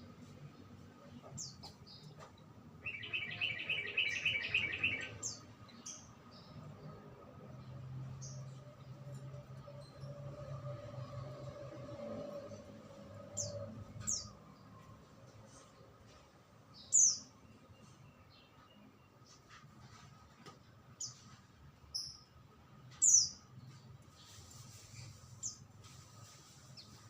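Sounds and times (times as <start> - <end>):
songbird chirping: 0.0 - 10.4, 13.1 - 20.2.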